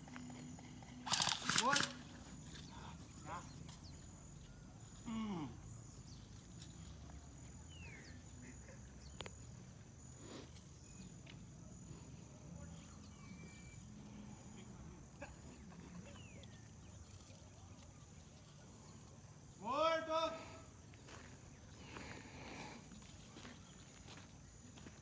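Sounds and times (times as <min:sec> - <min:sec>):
insects trilling: 0:00.0 - 0:25.0.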